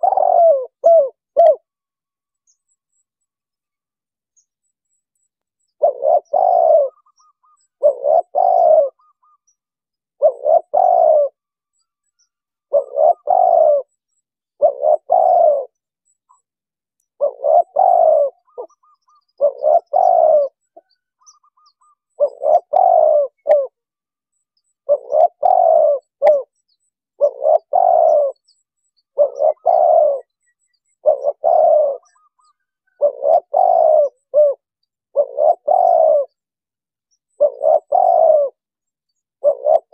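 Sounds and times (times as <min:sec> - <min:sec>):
dove cooing: 0:00.0 - 0:01.7, 0:05.7 - 0:11.4, 0:12.7 - 0:16.4, 0:17.2 - 0:23.8, 0:24.8 - 0:26.6, 0:27.2 - 0:36.4, 0:37.2 - 0:38.7, 0:39.3 - 0:39.9.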